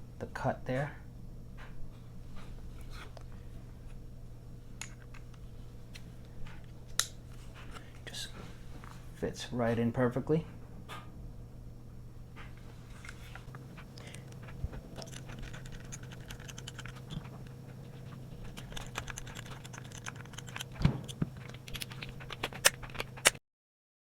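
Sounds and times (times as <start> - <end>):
metal parts clicking and scraping: 13.0 - 23.4.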